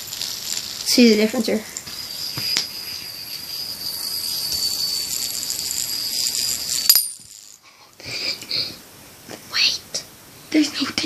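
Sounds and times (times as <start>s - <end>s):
fidget spinner whirring: 0.0s - 7.6s.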